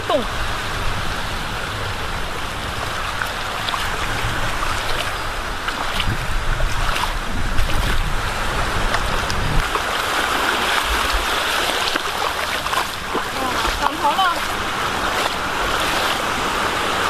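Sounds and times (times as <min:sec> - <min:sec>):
waves breaking on beach: 0:00.0 - 0:17.0
wind rumbling on microphone: 0:00.0 - 0:17.0
small splashes and knocks: 0:02.8 - 0:08.2, 0:08.8 - 0:16.3.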